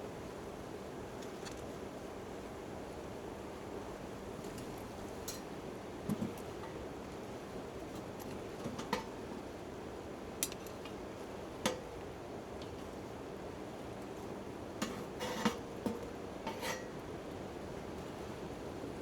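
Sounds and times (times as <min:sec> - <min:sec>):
campfire: 0:00.1 - 0:19.0.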